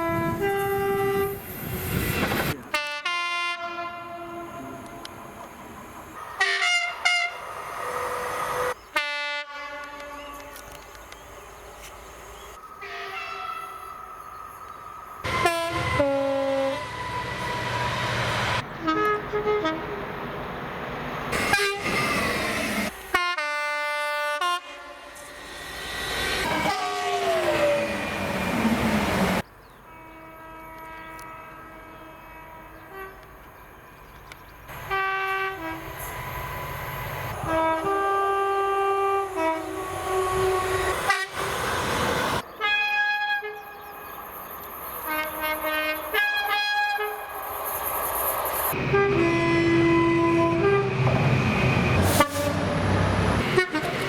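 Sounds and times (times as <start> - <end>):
train horn blasts: 0.0 - 1.4, 2.7 - 5.4, 6.4 - 10.6, 12.8 - 13.8, 15.2 - 18.0, 18.8 - 20.0, 21.4 - 22.2, 22.9 - 25.4, 26.4 - 28.0, 29.9 - 33.3, 34.7 - 36.6, 37.4 - 41.5, 42.6 - 43.7, 45.0 - 47.3, 48.8 - 51.1, 52.0 - 54.0
moving trains rumbling: 0.0 - 54.0.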